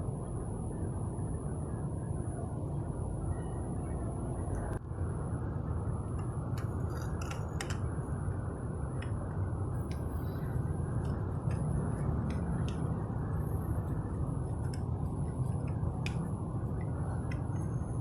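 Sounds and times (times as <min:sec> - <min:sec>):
sharp light clicks and taps: 0:11.0 - 0:13.1, 0:14.5 - 0:17.9.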